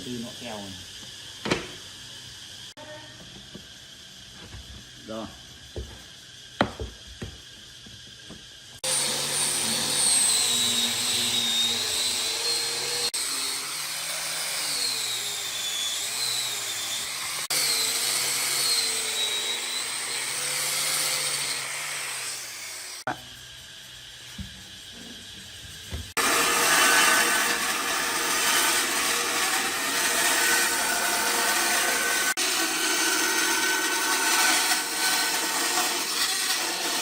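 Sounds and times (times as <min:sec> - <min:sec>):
power tool working wood: 0:08.8 - 0:23.2, 0:26.0 - 0:37.0.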